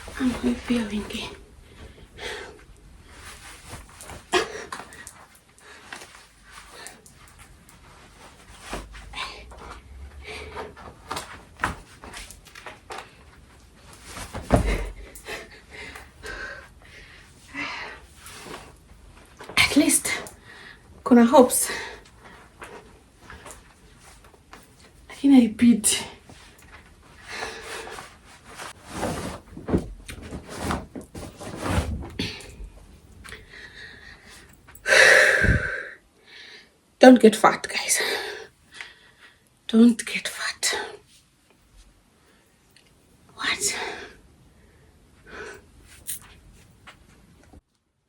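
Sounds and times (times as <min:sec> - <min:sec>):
clothing rustling and scraping: 0:00.0 - 0:34.8, 0:45.5 - 0:47.6
soft bumps and thumps: 0:10.5 - 0:15.2, 0:28.6 - 0:33.0.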